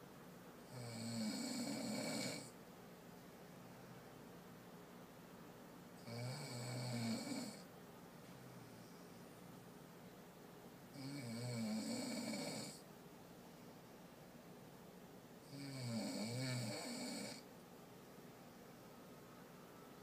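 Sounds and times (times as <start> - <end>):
person snoring: 0.7 - 2.5, 6.0 - 7.6, 11.0 - 12.8, 15.4 - 17.4.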